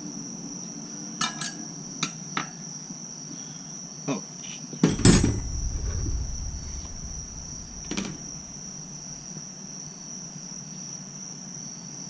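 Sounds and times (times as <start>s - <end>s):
crickets trilling: 0.0s - 12.0s.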